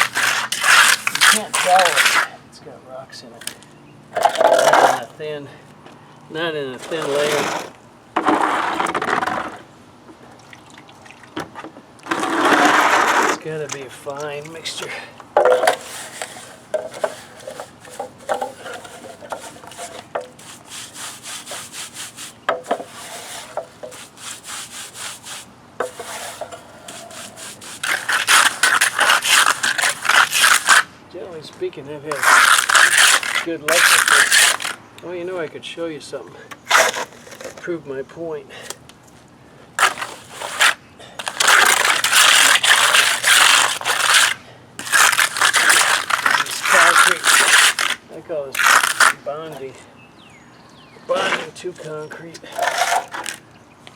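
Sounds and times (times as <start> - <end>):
trowel scraping concrete: 0.0 - 2.4, 6.7 - 9.7, 12.1 - 13.6, 14.6 - 30.9, 32.1 - 34.8, 36.7 - 37.7, 39.8 - 49.7, 51.1 - 53.4.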